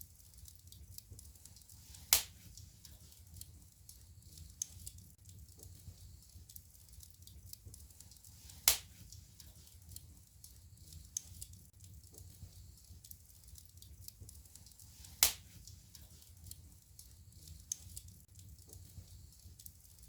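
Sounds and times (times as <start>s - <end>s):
fire crackling: 0.0s - 20.0s
fire low rumble: 0.0s - 20.0s
loud sharp fire pops: 2.1s - 2.4s, 8.6s - 9.0s, 15.2s - 15.6s.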